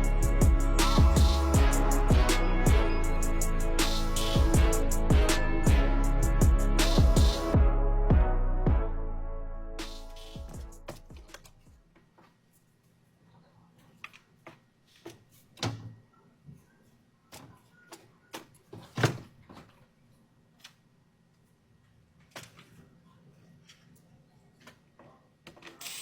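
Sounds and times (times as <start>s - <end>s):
music: 0.0s - 11.7s.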